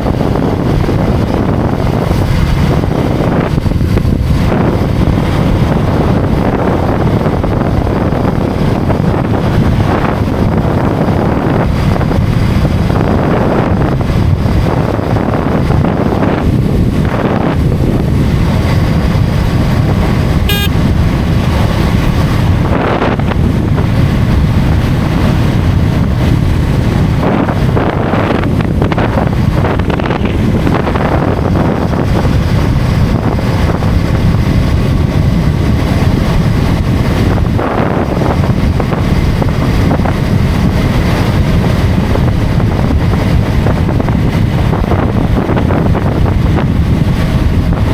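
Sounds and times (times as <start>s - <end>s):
road noise: 0.0s - 47.9s
wind buffeting microphone: 0.0s - 47.9s.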